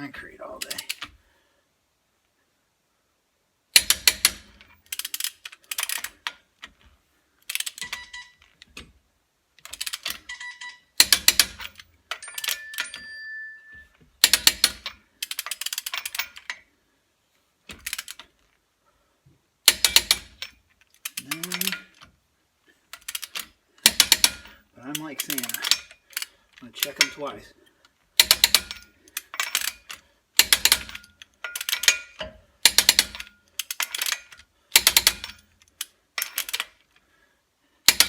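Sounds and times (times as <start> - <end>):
torque wrench clicking: 28.2 - 36.7.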